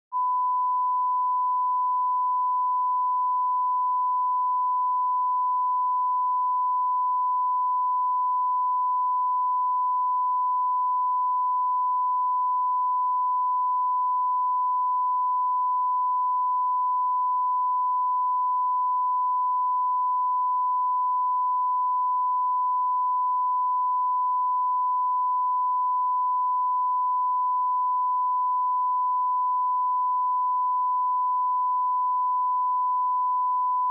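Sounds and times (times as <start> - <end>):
steady pure test tone beep: 0.1 - 33.9.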